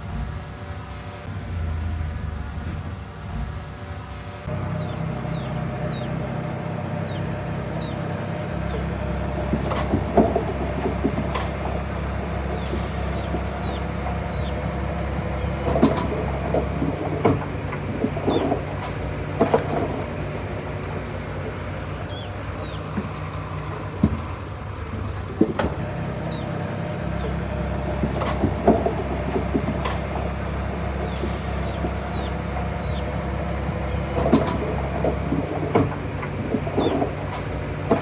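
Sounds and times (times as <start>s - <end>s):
heavy machinery diesel engine: 0.0s - 38.0s
metallic clanks and knocks: 8.6s - 38.0s.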